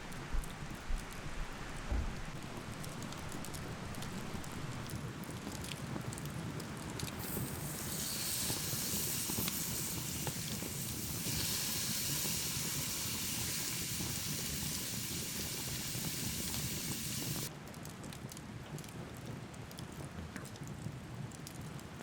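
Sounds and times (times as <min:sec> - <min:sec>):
meat sizzling: 0:07.2 - 0:17.5.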